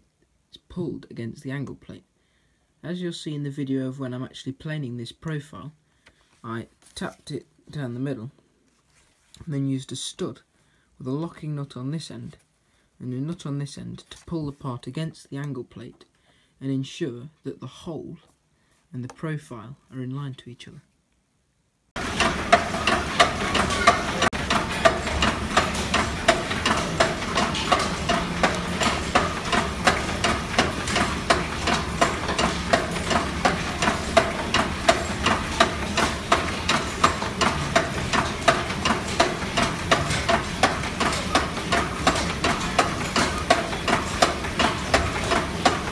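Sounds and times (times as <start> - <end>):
regular mechanical knocking: 22.0 - 45.9
workshop machinery running: 22.0 - 45.9.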